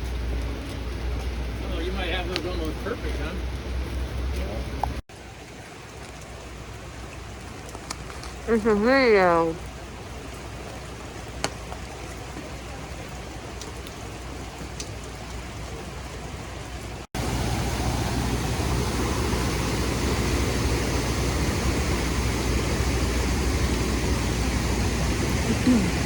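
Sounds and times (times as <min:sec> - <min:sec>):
light rain falling: 0:00.0 - 0:26.0
drip-like ticks: 0:04.4 - 0:08.5, 0:13.5 - 0:15.4
flowing water rushing: 0:05.1 - 0:26.0.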